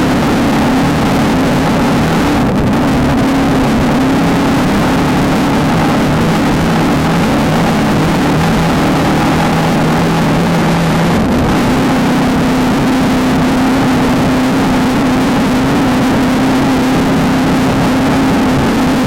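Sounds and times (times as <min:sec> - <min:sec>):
constant rushing noise: 0:00.0 - 0:19.0
race car engine running hard: 0:00.0 - 0:19.0.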